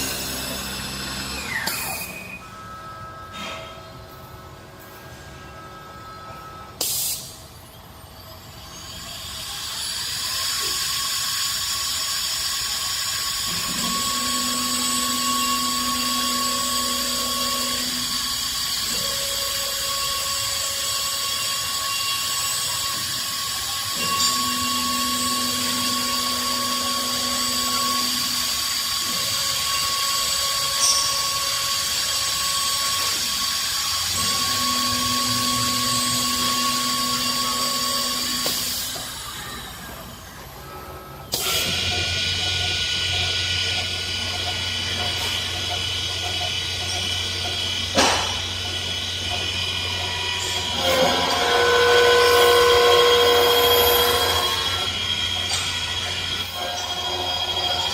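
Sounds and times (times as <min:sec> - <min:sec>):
lathe motor high whine: 0:00.0 - 0:06.9, 0:08.6 - 0:57.9.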